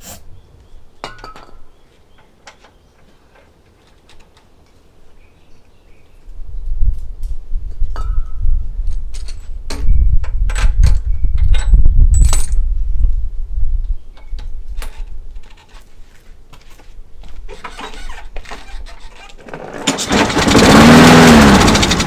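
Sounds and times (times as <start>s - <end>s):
metallic clinks and rattles: 10.5s - 12.6s.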